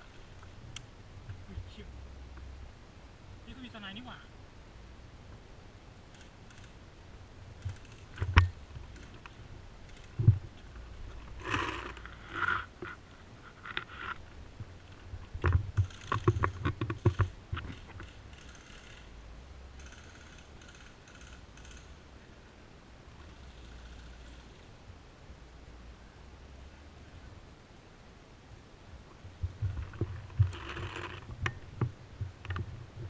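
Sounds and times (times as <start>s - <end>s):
rustling of movement: 0.0s - 3.8s, 5.2s - 25.0s, 28.6s - 33.0s.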